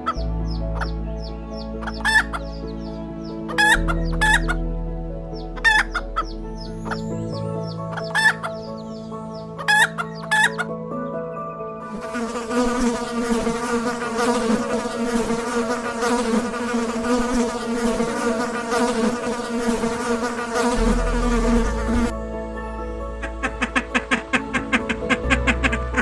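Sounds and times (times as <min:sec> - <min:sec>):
insects buzzing: 0:00.0 - 0:04.6, 0:05.4 - 0:10.7, 0:11.8 - 0:22.1.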